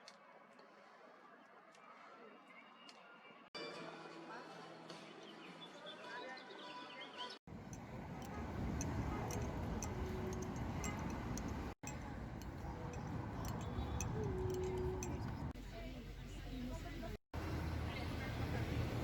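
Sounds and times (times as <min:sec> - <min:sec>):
rumbling street noise: 0:07.5 - 0:19.0.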